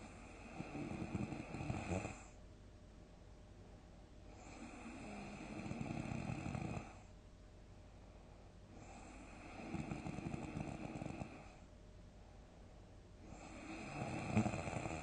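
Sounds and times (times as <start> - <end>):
person snoring heavily: 4.4 - 7.0, 8.8 - 11.5, 13.3 - 15.0.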